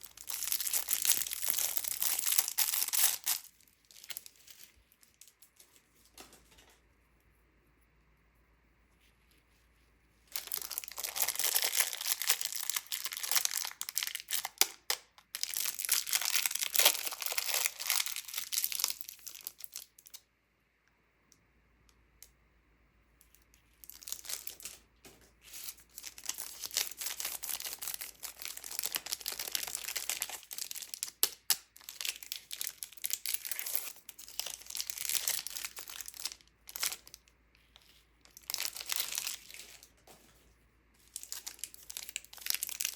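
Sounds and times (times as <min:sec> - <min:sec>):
candy wrappers crinkling: 0:00.0 - 0:05.5, 0:10.3 - 0:20.2, 0:23.8 - 0:40.4, 0:41.0 - 0:42.9.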